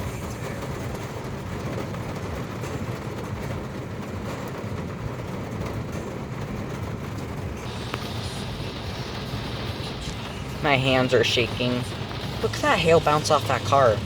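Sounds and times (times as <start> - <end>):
low rumble: 6.4 - 14.0.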